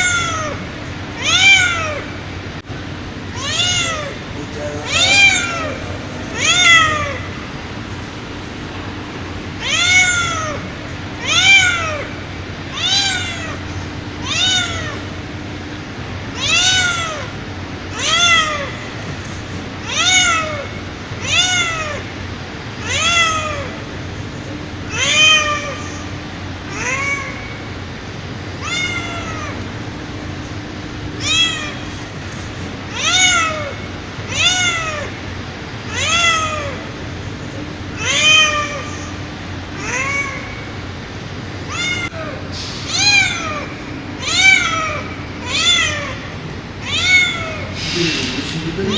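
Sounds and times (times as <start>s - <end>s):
cat meowing: 4.8s - 7.3s, 31.2s - 31.9s, 41.7s - 46.2s, 46.8s - 47.7s.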